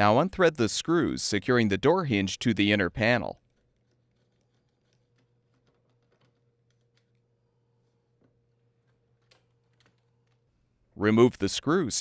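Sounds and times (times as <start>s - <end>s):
faint room hum: 0.0s - 12.0s.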